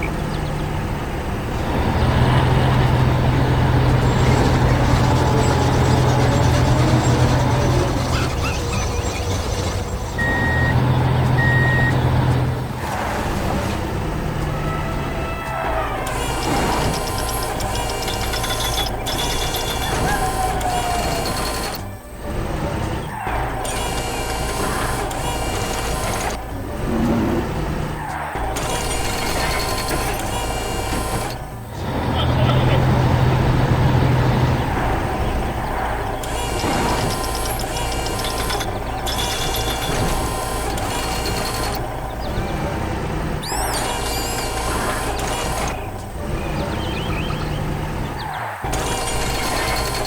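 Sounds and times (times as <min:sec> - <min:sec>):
mechanical rattling and whirring: 0:00.0 - 0:50.0
truck engine rumbling: 0:00.0 - 0:50.0
reversing alarm beeps: 0:04.3 - 0:12.6, 0:16.1 - 0:21.8, 0:34.6 - 0:50.0.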